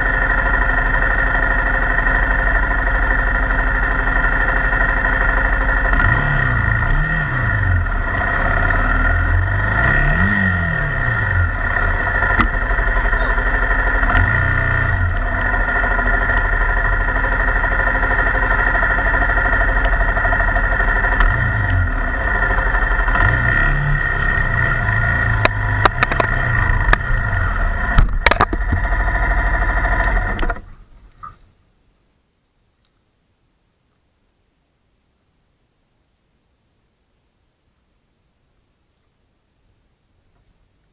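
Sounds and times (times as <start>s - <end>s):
motorcycle engine revving: 0.0s - 31.4s.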